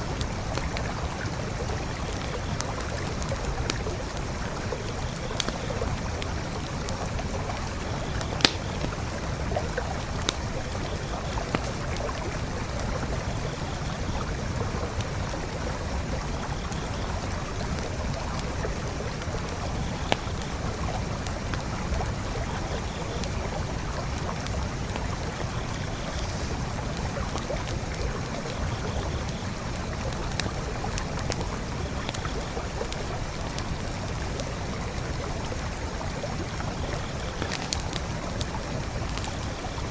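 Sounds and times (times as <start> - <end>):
campfire crackling and popping: 0.0 - 39.9
forest creek flowing: 0.0 - 39.9.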